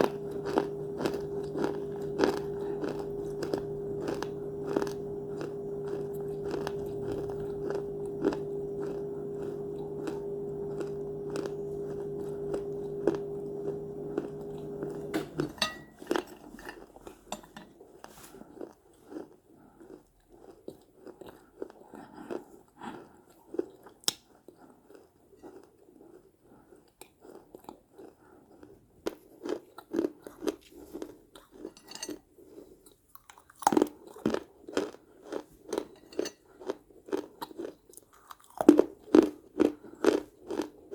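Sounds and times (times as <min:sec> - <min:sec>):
steady low hum: 0:00.0 - 0:17.6.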